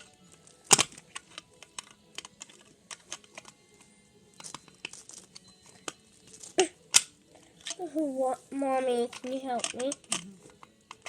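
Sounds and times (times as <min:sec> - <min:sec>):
plastic bricks clicking and clattering: 0:00.0 - 0:03.6, 0:09.0 - 0:11.0.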